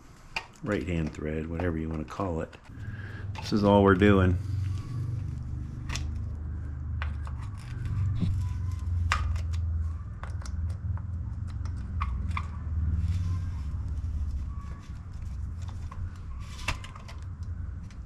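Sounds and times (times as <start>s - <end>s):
steady low hum: 2.5s - 18.0s.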